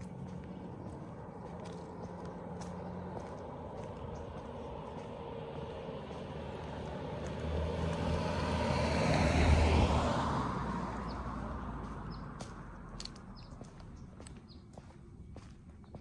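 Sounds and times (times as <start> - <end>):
car driving past: 1.7 - 14.1.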